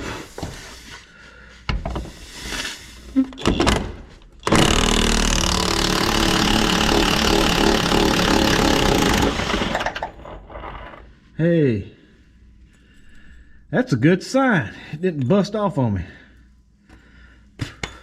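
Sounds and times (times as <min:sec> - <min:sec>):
impact wrench hammering: 0:04.4 - 0:10.1.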